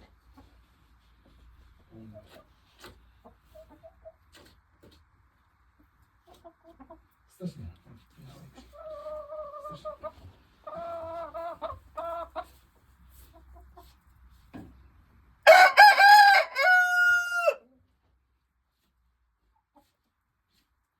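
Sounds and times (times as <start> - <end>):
rooster crowing: 15.4 - 17.6.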